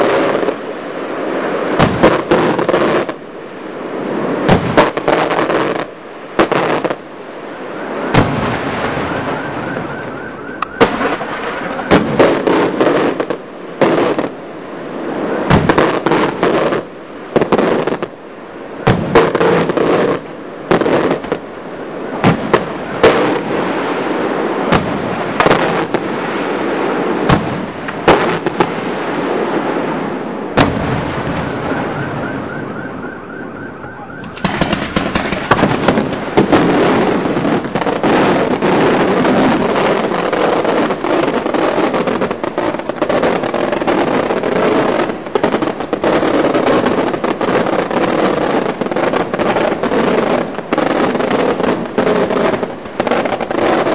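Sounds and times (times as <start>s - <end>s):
fireworks crackle and fizz: 0.0s - 32.5s, 33.9s - 53.9s
fireworks shells banging: 34.2s - 38.2s.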